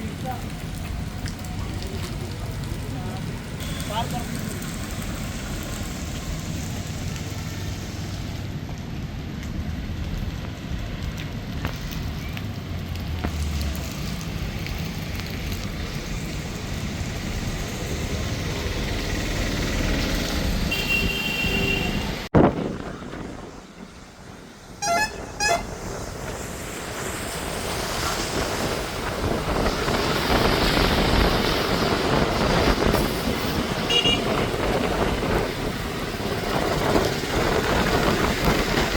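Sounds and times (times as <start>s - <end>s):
road traffic: 0.0s - 38.9s
wind noise: 14.1s - 38.9s
short vehicle horn toots: 20.7s - 22.1s, 24.8s - 25.7s.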